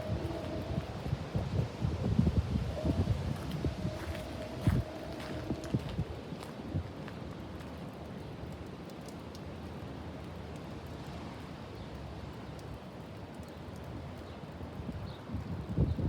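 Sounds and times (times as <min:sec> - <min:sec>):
strong wind rushing: 0:00.0 - 0:06.1.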